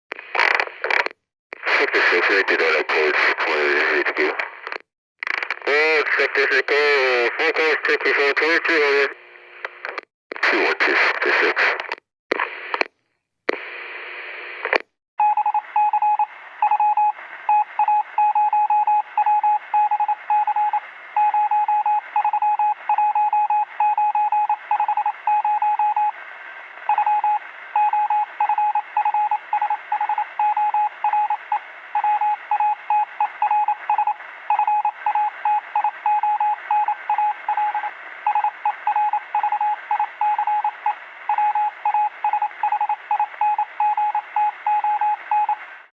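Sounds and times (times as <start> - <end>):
walkie-talkie static bursts: 0.1 - 12.9, 13.5 - 14.8
steady radio hiss: 0.2 - 12.9
morse code tone: 32.0 - 45.6.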